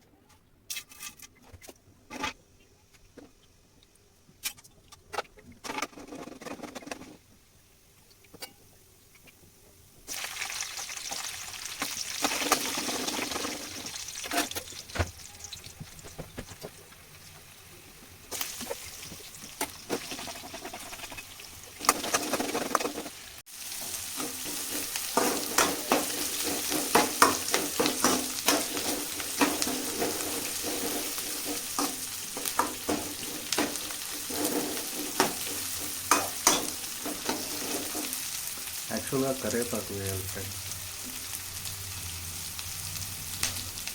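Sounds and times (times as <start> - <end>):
spatula scraping and tapping pan: 4.5 - 7.2, 11.8 - 15.1, 18.5 - 23.2, 23.8 - 38.7
food sizzling in hot oil: 6.9 - 43.9.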